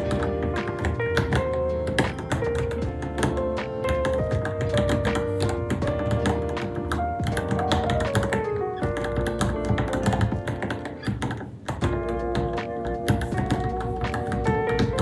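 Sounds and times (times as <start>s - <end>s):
background music: 0.0s - 15.0s
fast typing on mechanical keyboard: 0.0s - 15.0s.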